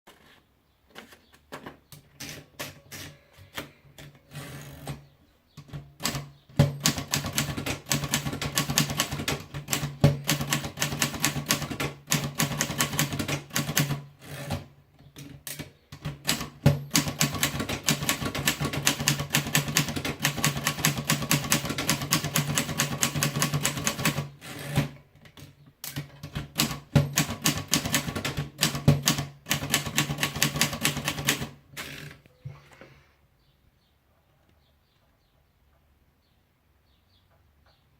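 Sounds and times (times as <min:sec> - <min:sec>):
typewriter keys clattering: 0:05.7 - 0:31.6.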